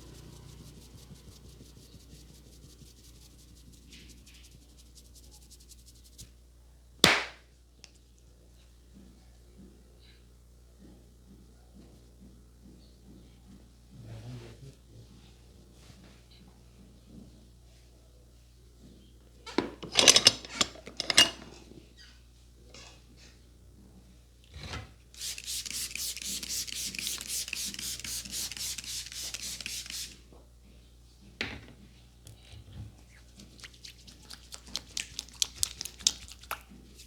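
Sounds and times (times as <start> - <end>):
hands rubbing scalp and hair: 0.0 - 6.3, 25.2 - 30.2
loud sharp hits on head: 7.0 - 7.4.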